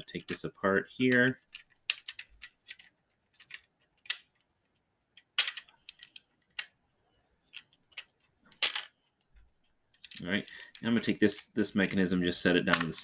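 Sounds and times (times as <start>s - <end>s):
hard plastic parts clicking: 1.0s - 6.8s, 7.5s - 9.3s, 9.9s - 10.9s, 12.7s - 13.0s.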